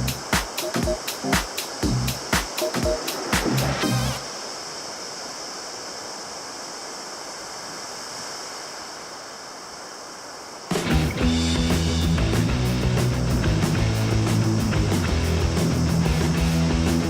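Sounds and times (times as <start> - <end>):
background music with drums: 0.0 - 4.2, 10.7 - 17.0
ocean surf rushing: 0.0 - 9.8.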